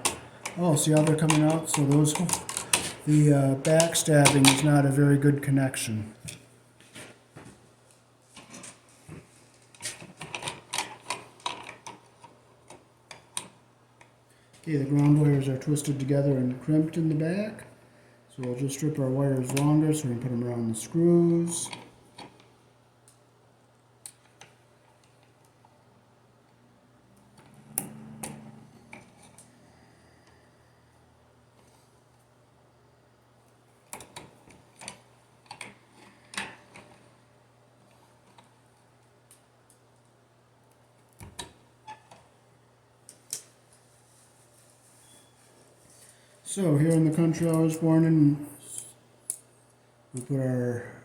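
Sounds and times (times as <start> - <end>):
clicks of wires being handled: 0.0 - 4.7, 33.8 - 37.0, 43.0 - 43.8
faint steady hum: 0.0 - 51.0.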